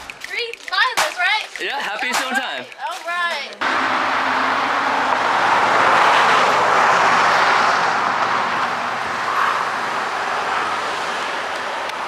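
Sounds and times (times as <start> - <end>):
car engine and tyre noise: 3.6 - 12.0.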